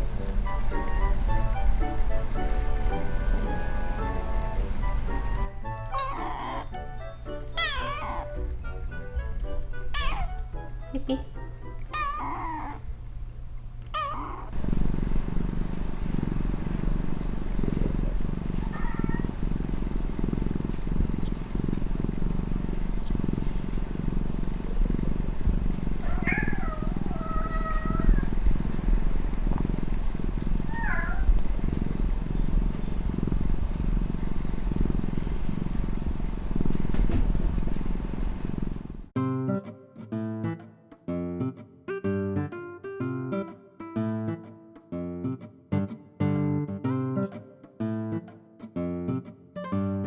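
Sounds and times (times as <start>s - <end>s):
cat purring: 0.0s - 39.2s
cat meows: 5.8s - 6.8s, 7.5s - 8.4s, 9.9s - 10.4s, 11.9s - 12.8s, 14.0s - 14.5s, 18.6s - 19.2s, 26.0s - 28.6s, 30.6s - 31.4s.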